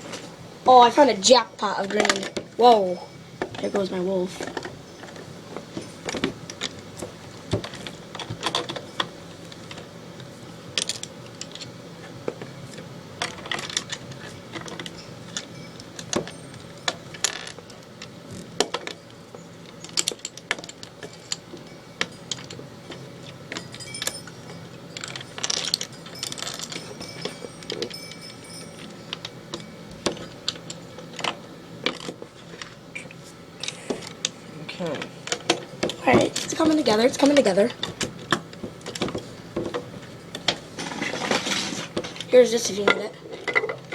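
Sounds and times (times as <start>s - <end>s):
plastic pieces clicking and rattling: 25.0s - 26.8s.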